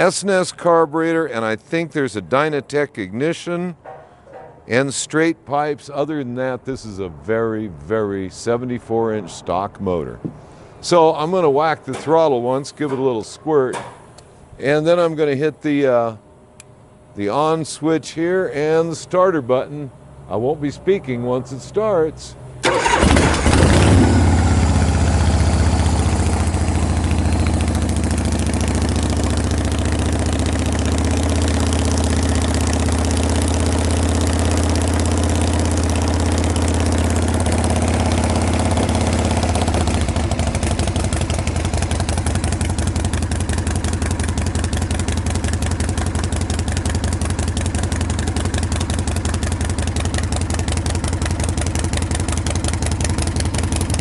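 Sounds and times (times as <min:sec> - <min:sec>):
motorcycle engine idling: 0:22.6 - 0:54.0.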